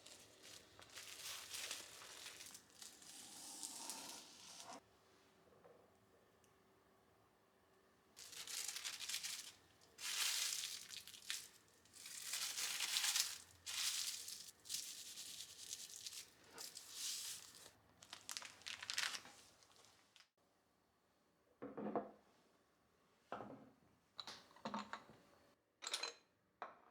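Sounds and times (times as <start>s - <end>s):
wrapping material crumpling: 0.0s - 4.8s, 8.2s - 20.3s.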